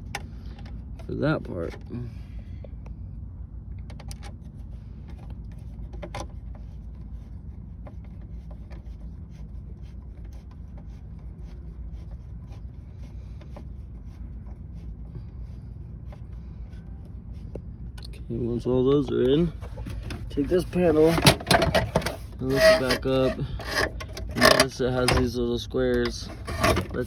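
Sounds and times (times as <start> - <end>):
steady low hum: 0.0 - 27.0
screwdriver clicking on plastic: 21.2 - 25.3.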